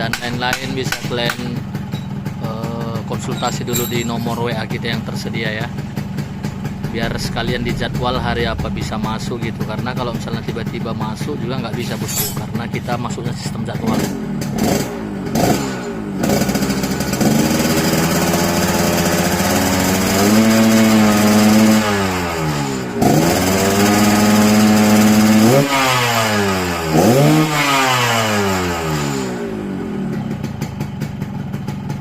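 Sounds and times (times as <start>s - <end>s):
two-stroke engine revving: 5.2s - 13.0s, 13.8s - 30.8s.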